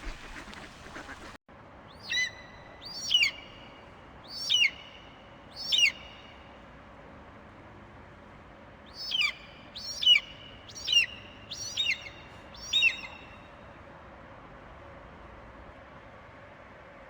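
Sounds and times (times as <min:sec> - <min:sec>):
bird calling: 0:00.0 - 0:06.6, 0:08.9 - 0:13.7.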